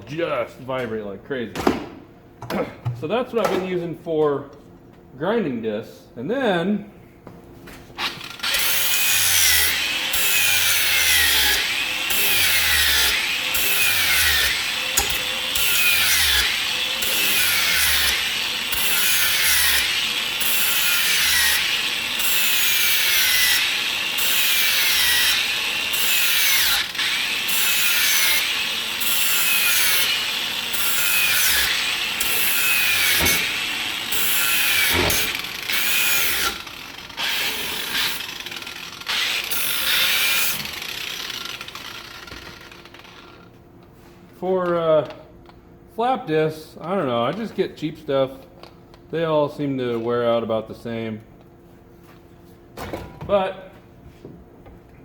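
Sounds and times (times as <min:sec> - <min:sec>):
angle grinder grinding metal: 0:08.0 - 0:43.5.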